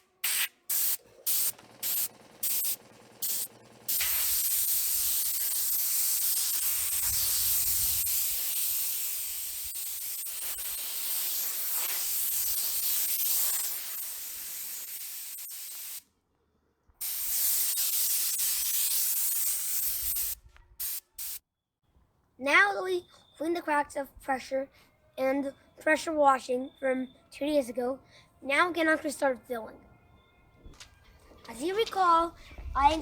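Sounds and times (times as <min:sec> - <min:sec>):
compressed air hissing: 0:00.0 - 0:16.0, 0:17.0 - 0:21.4.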